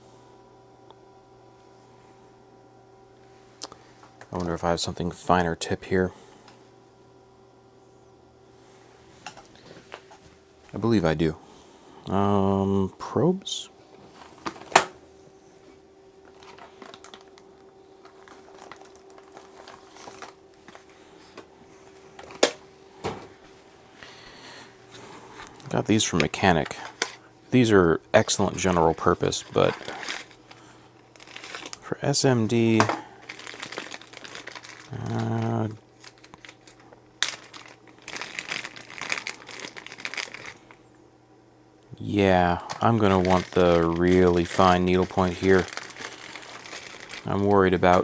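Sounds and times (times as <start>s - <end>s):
faint steady hum: 0.0s - 48.0s
rustling and crinkling: 13.9s - 23.7s, 24.8s - 27.3s, 28.2s - 31.9s, 32.7s - 41.0s, 42.3s - 48.0s
small ticks and rustling: 16.2s - 21.5s
person saying uhh: 34.9s - 35.8s.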